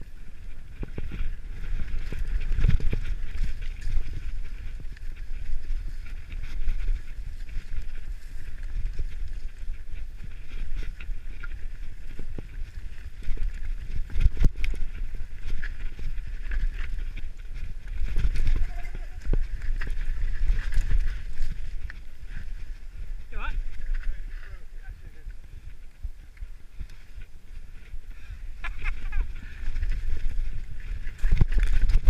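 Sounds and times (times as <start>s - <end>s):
bike tyre noise: 0.0s - 32.0s
wind rumbling on microphone: 0.0s - 32.0s
bike rattles and knocks: 0.3s - 22.6s, 28.6s - 32.0s.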